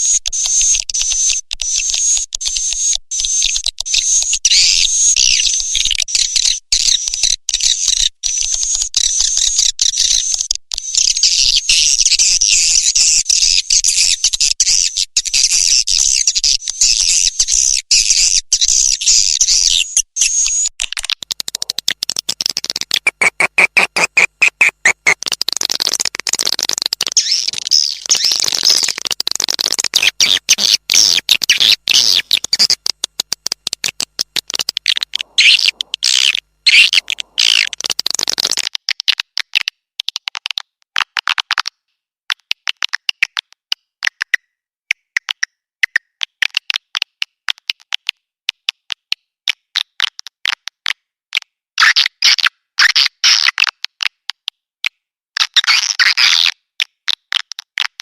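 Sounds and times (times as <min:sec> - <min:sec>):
swiftlet chirps and twitters: 0:22.6 - 0:32.8.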